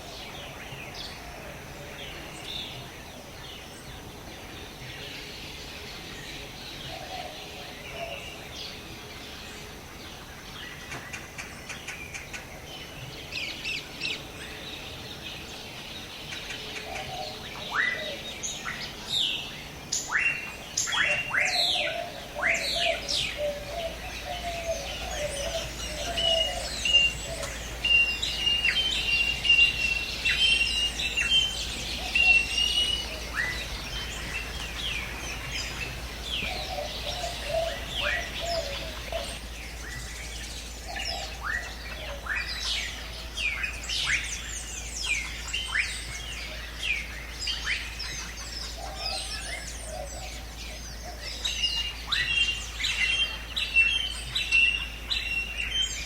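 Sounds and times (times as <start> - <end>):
steady background hiss: 0.0 - 56.0
low warbling bird call: 16.6 - 56.0.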